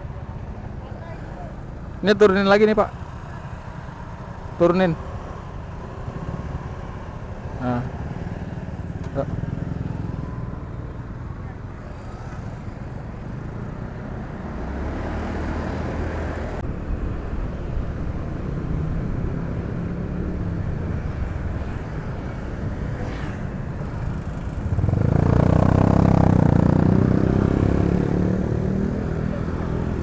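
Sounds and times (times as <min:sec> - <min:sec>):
road noise: 0:00.0 - 0:30.0
louder passing engine: 0:14.3 - 0:30.0.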